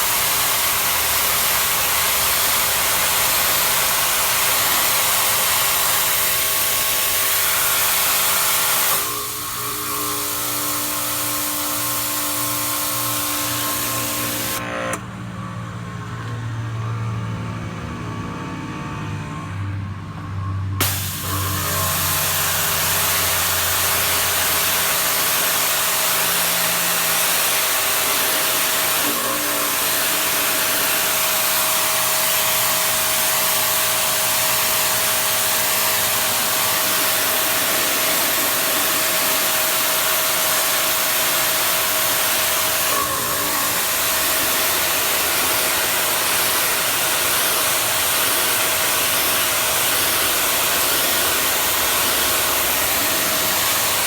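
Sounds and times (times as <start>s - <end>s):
pressure washer water jet hissing: 0.0s - 14.6s, 20.8s - 54.0s
motor pump whine: 0.0s - 54.0s.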